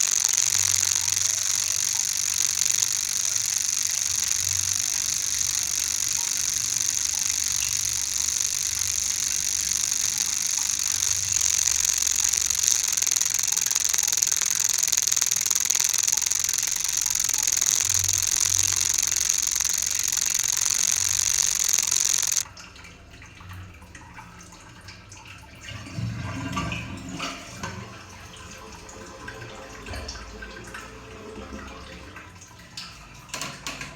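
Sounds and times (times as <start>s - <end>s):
loud steady hiss: 0.0s - 22.4s.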